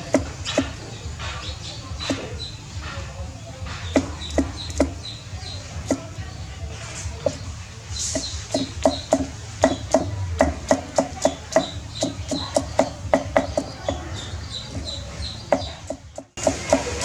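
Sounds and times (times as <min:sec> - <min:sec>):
knife chopping on wooden board: 0:03.7 - 0:05.0, 0:07.2 - 0:14.0, 0:15.5 - 0:17.0.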